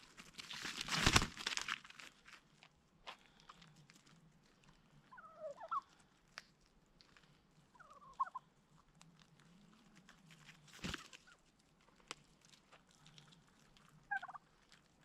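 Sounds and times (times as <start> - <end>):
turkey gobbling: 5.1 - 6.0, 7.7 - 8.5, 14.1 - 14.6.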